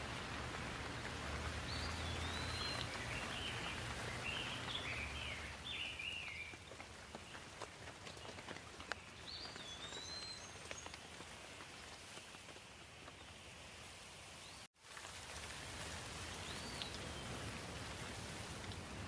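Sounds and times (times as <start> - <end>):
raindrops tapping: 0.0 - 13.4, 14.8 - 19.0
light rain falling: 0.0 - 19.0
bird chirps: 1.7 - 6.6.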